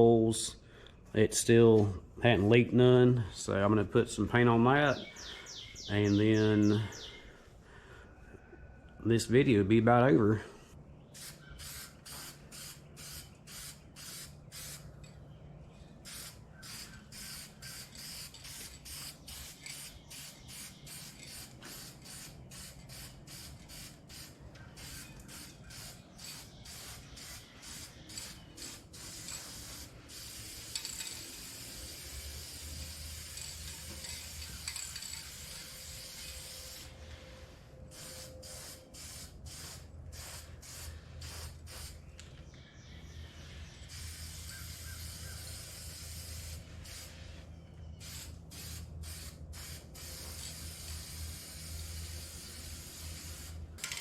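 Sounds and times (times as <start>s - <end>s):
spray paint hissing: 11.1s - 15.0s, 16.0s - 36.9s, 37.9s - 42.0s, 43.9s - 47.4s, 48.0s - 54.0s.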